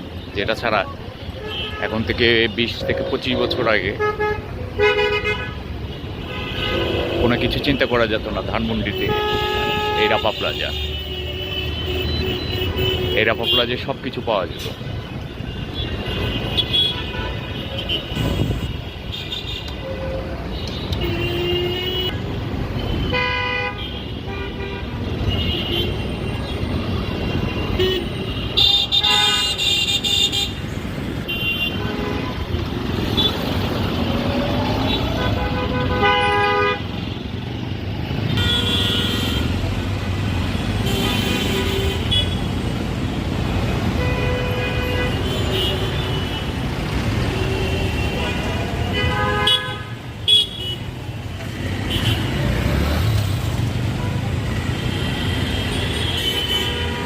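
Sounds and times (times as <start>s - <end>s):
traffic rumble: 0.0s - 57.0s
vehicle horn honks: 6.2s - 8.0s.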